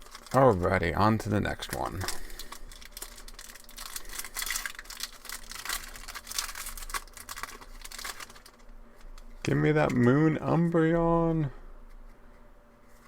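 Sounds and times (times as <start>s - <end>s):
foil wrapper crinkling and tearing: 0.0s - 9.3s.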